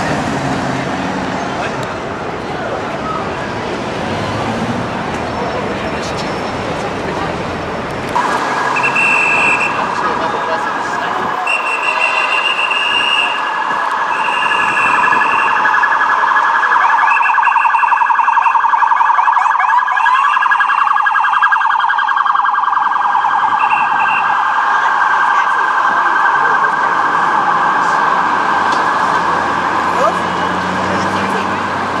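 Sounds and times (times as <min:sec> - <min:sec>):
siren rising sweeps: 0:08.2 - 0:32.0
police siren warbling yelp: 0:08.8 - 0:31.9.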